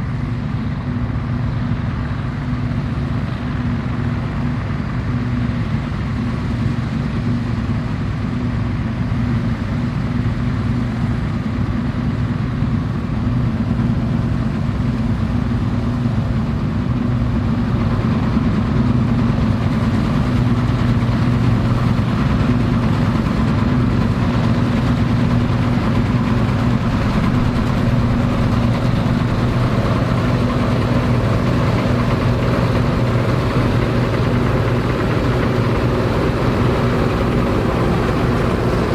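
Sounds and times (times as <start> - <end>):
combine harvester engine drone: 0.0 - 38.9
machinery working noise: 14.0 - 38.9.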